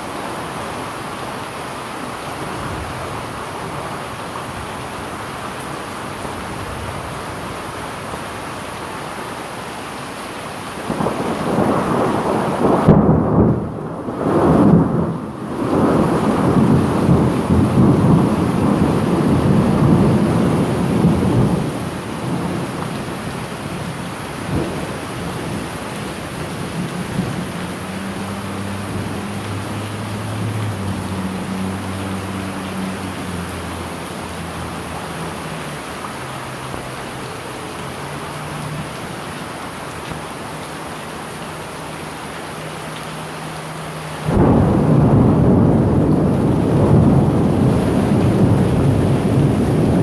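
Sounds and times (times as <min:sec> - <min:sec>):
heavy rain: 0:00.0 - 0:50.0
rolling thunder: 0:10.9 - 0:34.8, 0:44.2 - 0:50.0.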